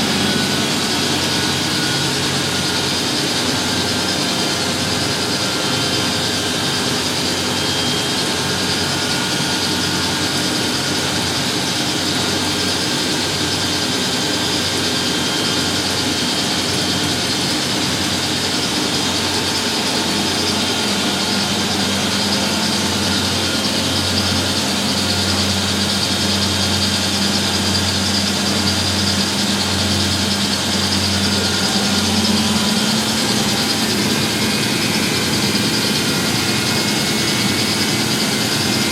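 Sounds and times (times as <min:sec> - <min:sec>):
low pulsing throb: 0:00.0 - 0:05.4, 0:15.8 - 0:38.9
washing machines spinning: 0:00.0 - 0:38.9.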